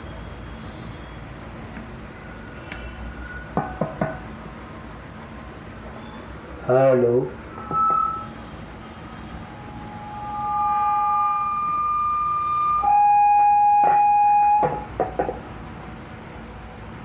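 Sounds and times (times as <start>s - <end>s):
microphone feedback whistle: 7.5s - 14.8s.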